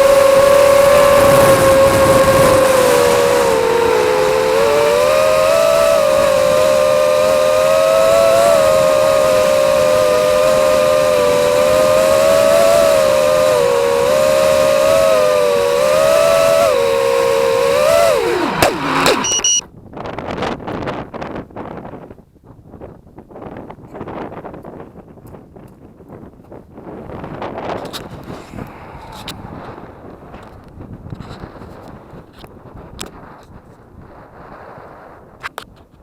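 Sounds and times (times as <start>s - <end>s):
drone motors whining: 0.0s - 19.6s.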